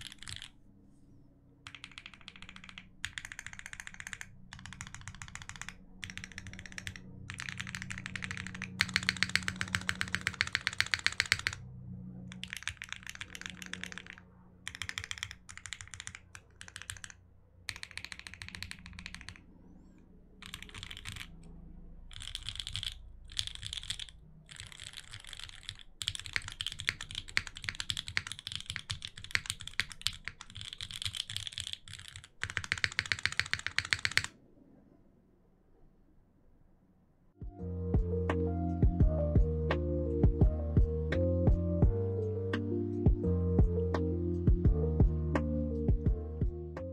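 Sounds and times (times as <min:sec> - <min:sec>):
mechanical keyboard typing: 0:00.0 - 0:00.5, 0:01.6 - 0:11.6, 0:12.3 - 0:19.5, 0:20.4 - 0:21.5, 0:22.1 - 0:34.3.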